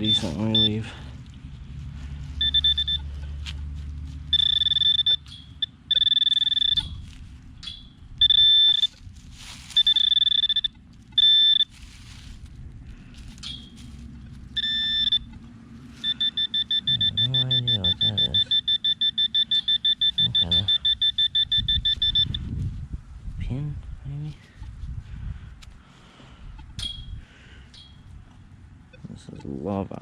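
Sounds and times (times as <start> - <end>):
metal detector tone: 0.0 - 0.8, 2.4 - 3.2, 4.3 - 7.0, 7.6 - 9.0, 9.7 - 11.8, 14.6 - 15.4, 16.0 - 22.4
digging in hard dirt: 0.0 - 22.6.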